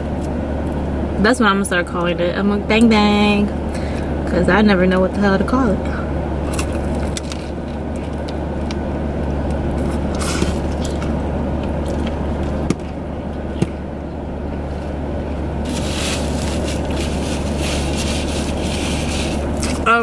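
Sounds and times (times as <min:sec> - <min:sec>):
low hum inside car: 0:00.0 - 0:20.0
rustling: 0:15.6 - 0:19.9.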